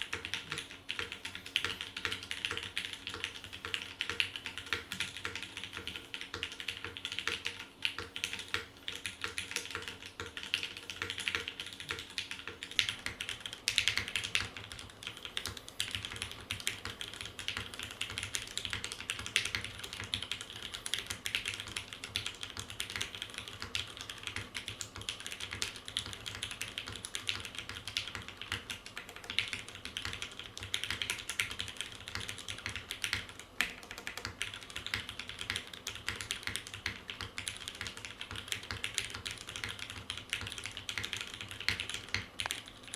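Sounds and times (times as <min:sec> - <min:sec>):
mechanical keyboard typing: 0:00.0 - 0:42.9.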